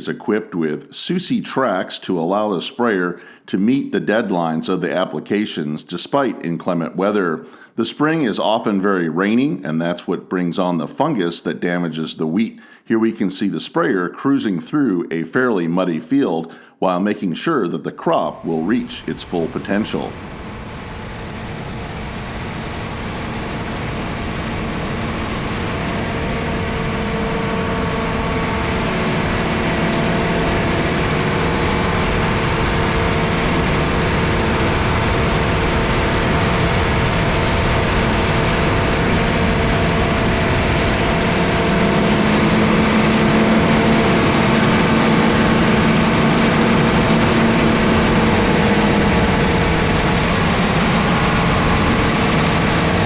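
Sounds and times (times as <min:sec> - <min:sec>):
sprayer engine running: 0:23.1 - 0:53.0.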